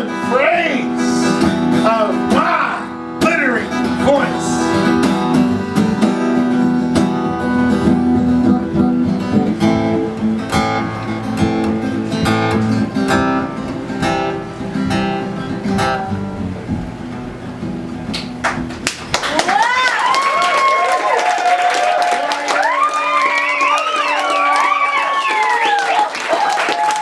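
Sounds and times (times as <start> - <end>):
solo guitar playing chords: 0.0 - 18.9.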